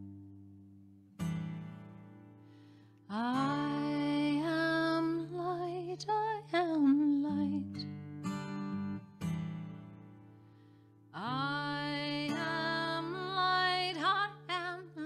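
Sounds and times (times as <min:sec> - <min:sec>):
strummed acoustic guitar: 0:00.0 - 0:15.0
woman singing with vibrato: 0:03.1 - 0:07.8, 0:11.2 - 0:15.0.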